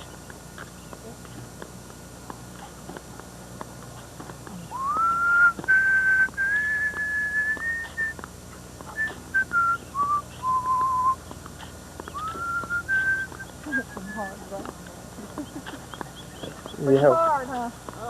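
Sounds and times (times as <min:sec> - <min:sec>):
person whistling a slow tune: 0:04.7 - 0:08.2, 0:09.0 - 0:11.2, 0:12.1 - 0:14.3.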